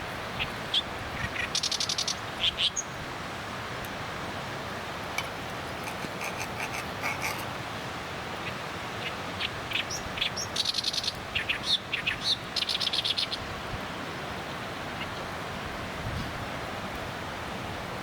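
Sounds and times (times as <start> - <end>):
steady background hiss: 0.0 - 18.0
bird rattling trill: 5.2 - 7.5.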